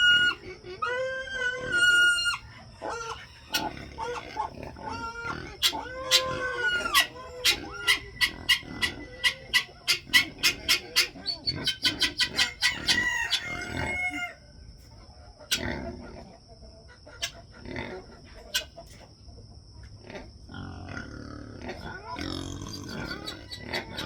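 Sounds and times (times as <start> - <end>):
chickens clucking and cackling: 0.0 - 24.0.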